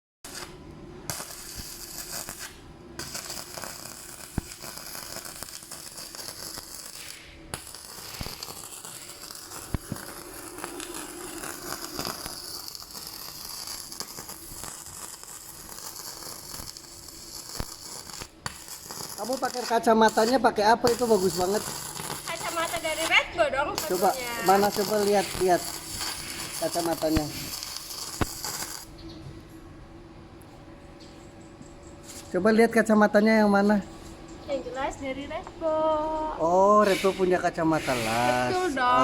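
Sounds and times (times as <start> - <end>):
welding arc crackling: 0.2 - 28.9, 36.4 - 39.0.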